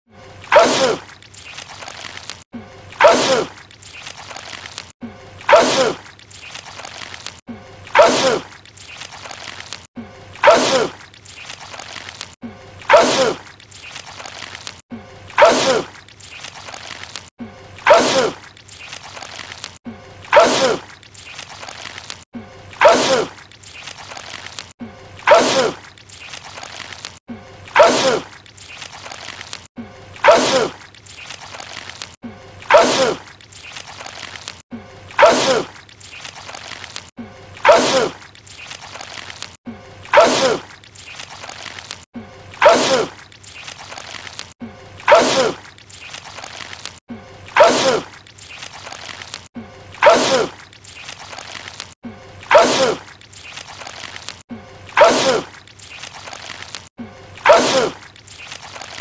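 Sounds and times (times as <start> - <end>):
man sneezing: 47.6 - 48.1, 55.0 - 55.5, 57.4 - 58.0.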